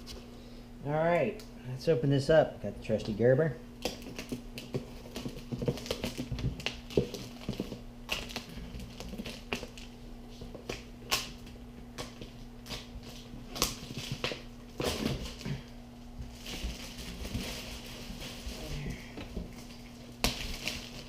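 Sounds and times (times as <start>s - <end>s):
steady low hum: 0.0s - 21.0s
packing rustling and scraping: 16.2s - 21.0s.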